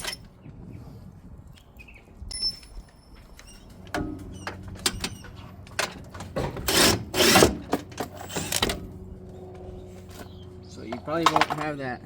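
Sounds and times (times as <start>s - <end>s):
metallic clicks and knocks: 10.9s - 11.8s.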